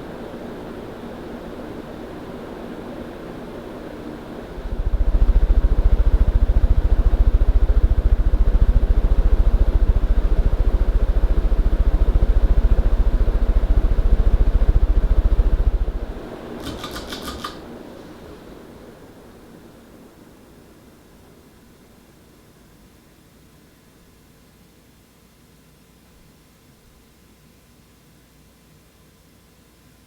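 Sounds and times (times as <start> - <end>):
fan airflow buffeting microphone: 0.0 - 22.6
rapid clicks: 15.7 - 17.7.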